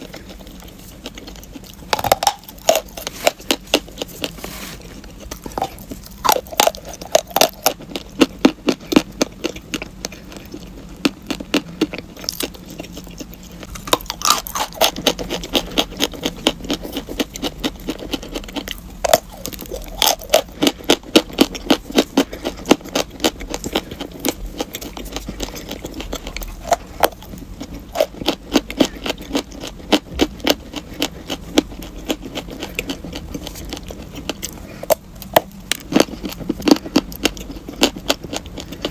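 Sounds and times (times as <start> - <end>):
chalk crunching while chewed: 0.0 - 38.9.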